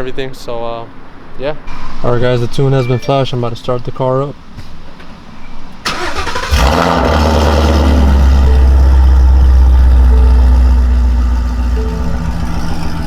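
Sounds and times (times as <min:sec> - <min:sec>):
car engine starting and idling: 0:05.7 - 0:13.0.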